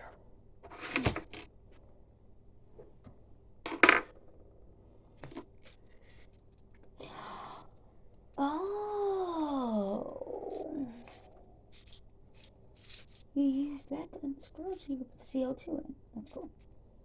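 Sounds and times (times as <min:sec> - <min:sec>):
airgun parts clicking and knocking: 0:05.2 - 0:06.9.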